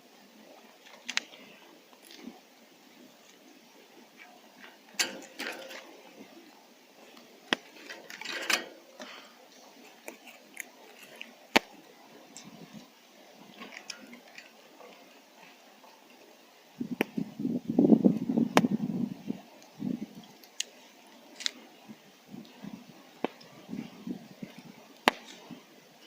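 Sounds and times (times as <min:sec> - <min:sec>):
handling rustles and clicks: 0:04.2 - 0:09.2, 0:13.5 - 0:16.0.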